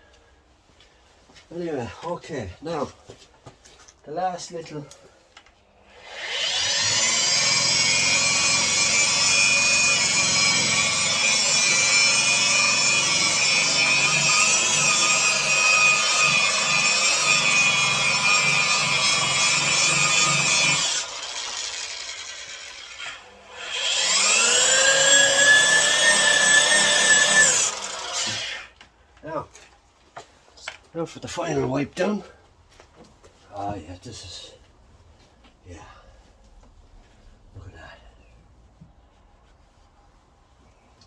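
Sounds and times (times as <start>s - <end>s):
power tool motor whining: 5.9s - 28.7s.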